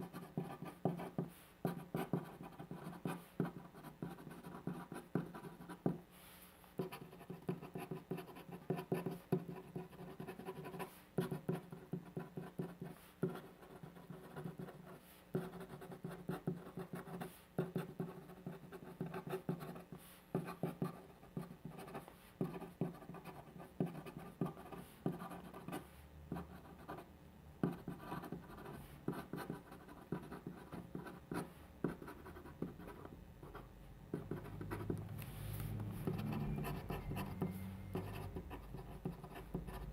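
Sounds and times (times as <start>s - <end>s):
pen writing on paper: 6.8s - 27.0s, 27.6s - 35.0s, 36.0s - 39.9s.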